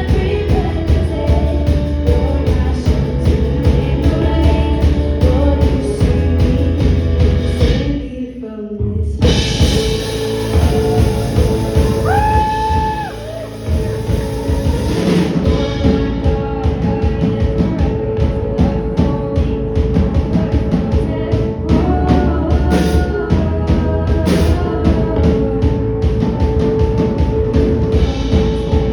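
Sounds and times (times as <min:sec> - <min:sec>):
live rock band playing: 0:00.0 - 0:07.9, 0:09.2 - 0:19.0
person singing: 0:00.0 - 0:28.9
crashing cymbals: 0:09.2 - 0:15.5.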